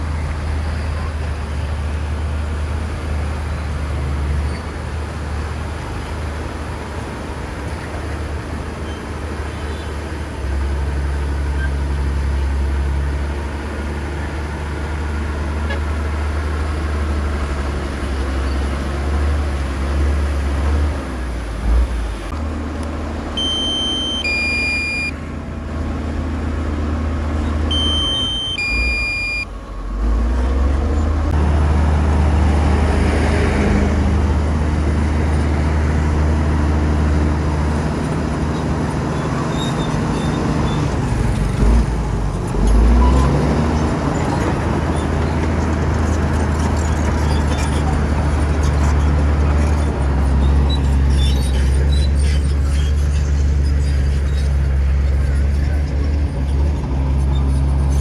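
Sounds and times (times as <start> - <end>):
bulldozer diesel engine droning: 0.0 - 58.0
two-note electronic beep: 23.4 - 25.1, 27.7 - 29.5.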